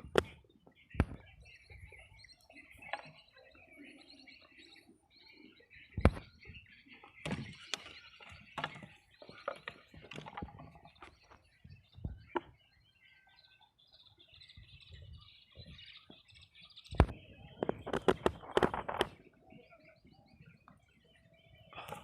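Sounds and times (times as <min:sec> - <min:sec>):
small birds chirping: 0:00.0 - 0:22.0
sharp knocks and handling noises: 0:07.2 - 0:11.4.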